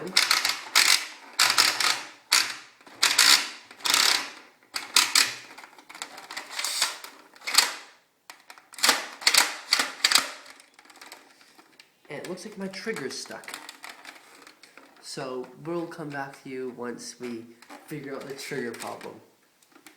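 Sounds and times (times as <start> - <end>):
plastic toy blaster clicking: 6.4 - 10.6.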